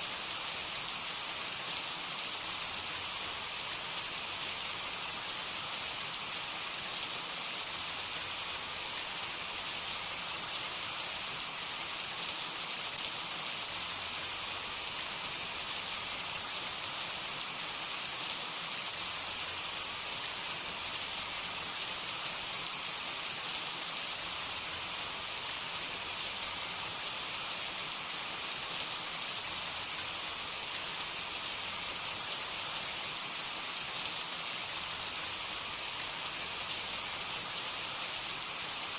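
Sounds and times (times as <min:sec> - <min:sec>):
pastry deep-frying in hot oil: 0:00.0 - 0:38.9.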